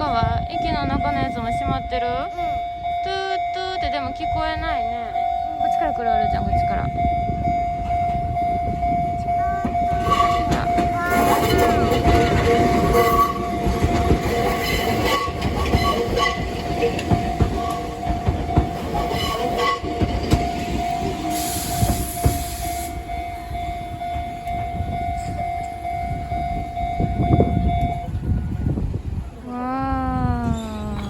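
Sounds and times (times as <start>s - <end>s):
crossing bell ringing: 0.0s - 28.9s
train wheels clacking: 7.7s - 28.0s.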